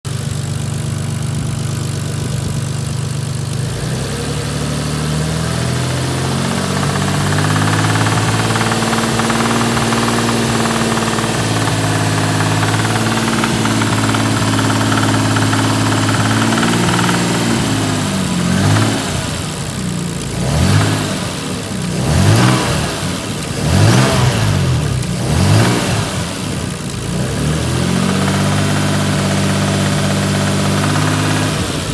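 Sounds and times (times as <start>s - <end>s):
engine revving: 3.5s - 31.9s
car engine idling with knock: 5.1s - 31.9s.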